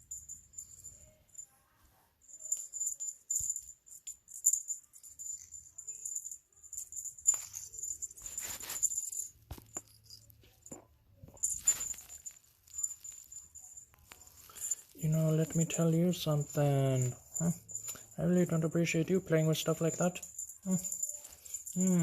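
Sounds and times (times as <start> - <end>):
toy rattling: 0.0 - 1.6, 2.2 - 22.0
small bell jingling: 0.0 - 22.0.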